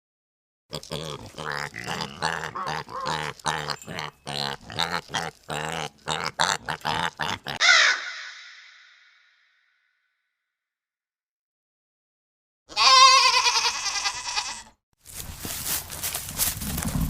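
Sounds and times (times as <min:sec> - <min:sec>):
animal harsh calls: 0:00.7 - 0:09.5.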